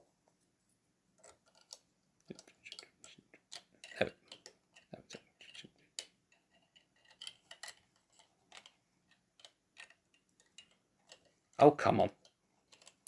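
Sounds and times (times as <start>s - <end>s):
faint clicks and taps: 1.2s - 13.0s.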